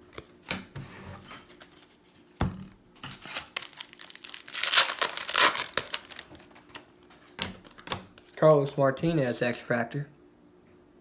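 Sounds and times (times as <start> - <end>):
foil wrapper crinkling and tearing: 3.2 - 7.9.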